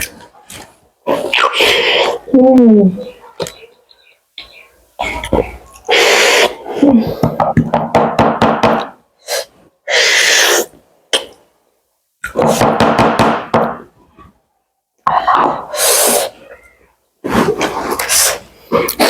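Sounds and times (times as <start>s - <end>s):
slurping and sucking: 0.0s - 2.3s, 5.0s - 6.8s, 9.2s - 10.8s, 15.4s - 16.6s, 17.2s - 19.0s.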